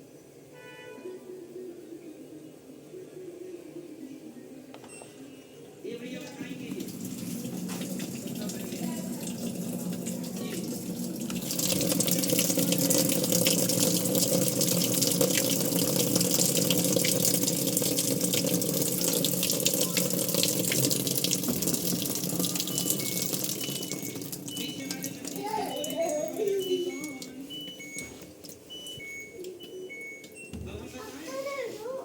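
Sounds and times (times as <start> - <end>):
water running: 6.2 - 29.3.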